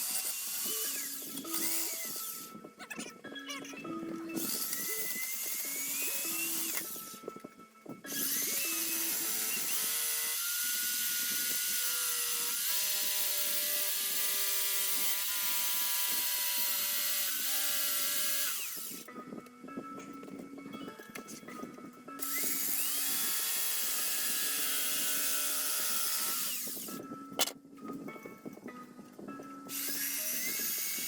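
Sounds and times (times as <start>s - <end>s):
power tool cutting wood: 0.0s - 2.6s, 4.3s - 7.1s, 8.1s - 19.1s, 22.2s - 27.0s, 29.7s - 31.0s.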